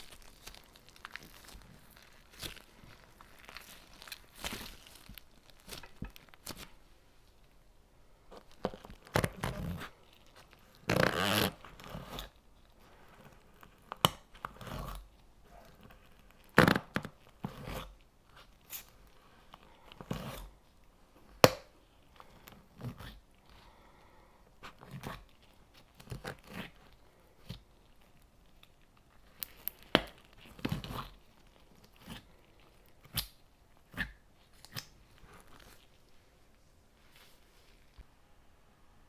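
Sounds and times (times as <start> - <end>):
slime crunching and crackling: 0.0 - 6.8, 24.6 - 36.0.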